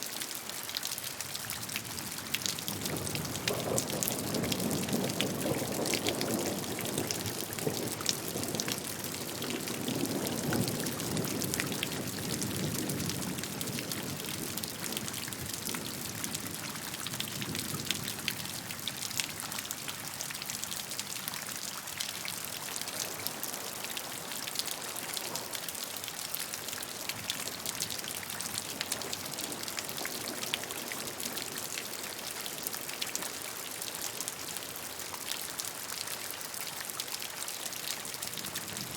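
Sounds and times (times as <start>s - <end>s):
rushing water: 0.0s - 38.9s
steady rain: 0.0s - 38.9s.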